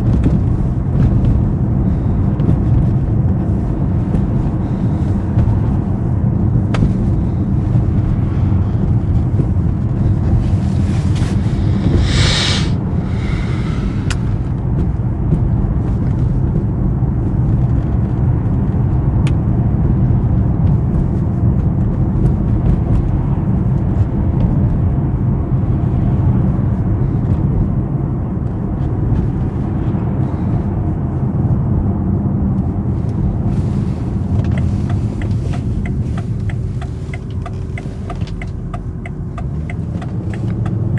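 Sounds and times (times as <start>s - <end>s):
car engine and road noise: 0.0s - 40.9s
brief hiss: 11.0s - 14.4s.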